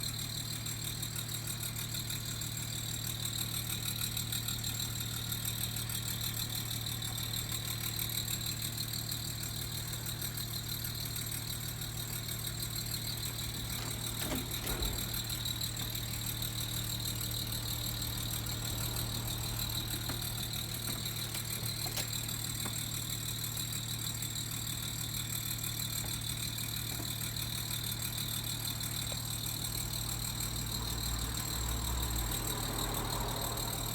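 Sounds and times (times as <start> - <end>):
air conditioner unit humming: 12.5 - 22.9.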